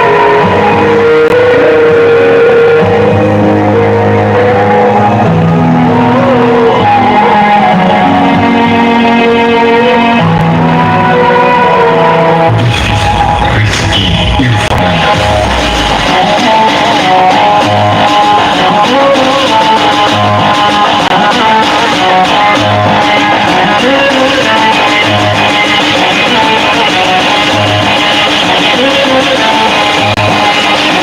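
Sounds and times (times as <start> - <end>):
low bass hits: 12.5 - 16.5.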